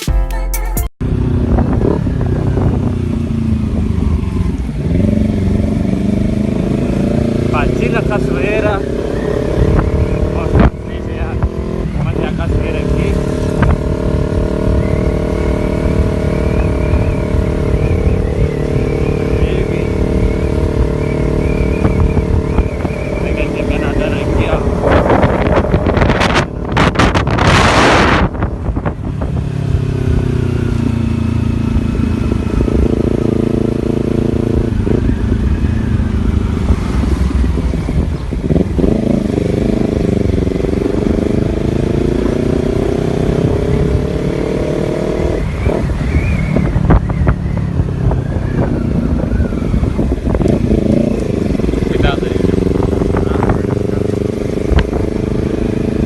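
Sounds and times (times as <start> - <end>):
rush of wind noise: 1.0 - 56.0
vehicle engine running: 49.9 - 56.0.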